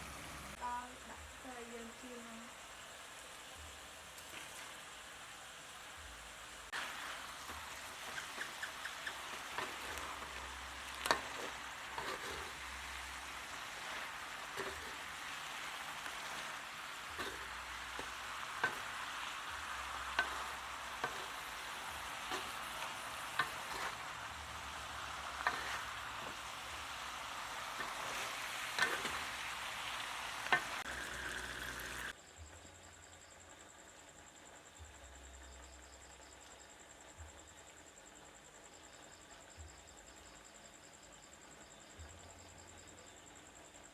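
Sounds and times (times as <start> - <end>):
food sizzling in hot oil: 0.0 - 32.6.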